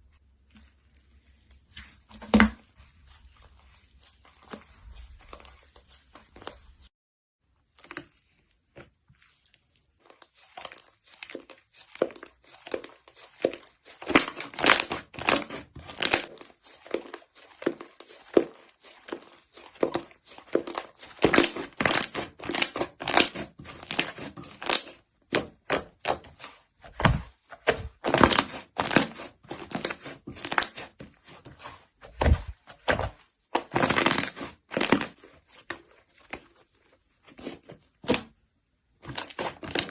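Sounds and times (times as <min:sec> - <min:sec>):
slime crackling and popping: 0:19.8 - 0:26.4.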